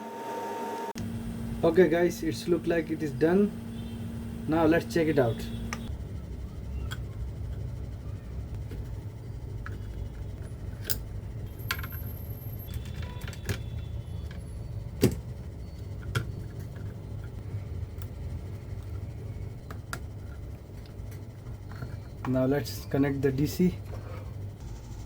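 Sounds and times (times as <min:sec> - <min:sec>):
steady low hum: 0:00.8 - 0:25.0.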